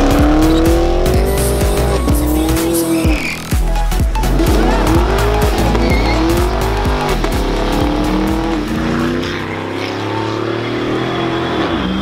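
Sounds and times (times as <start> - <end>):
car engine revving hard: 0.0 - 3.2, 4.2 - 12.0
tyre squeal: 2.7 - 3.6, 4.4 - 7.2.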